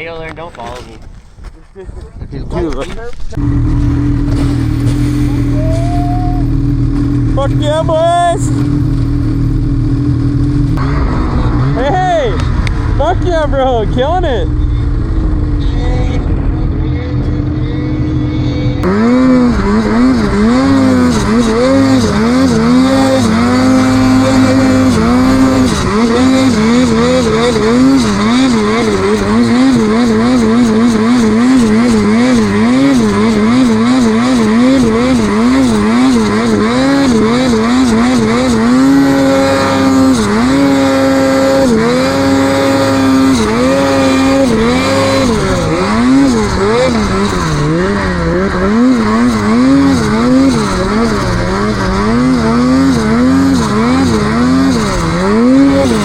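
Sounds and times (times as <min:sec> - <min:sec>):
snowmobile engine revving: 0:02.6 - 0:56.0.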